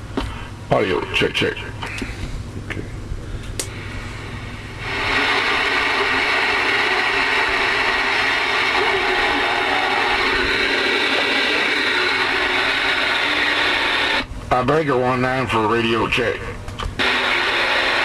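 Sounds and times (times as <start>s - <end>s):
radio static: 4.7s - 18.0s.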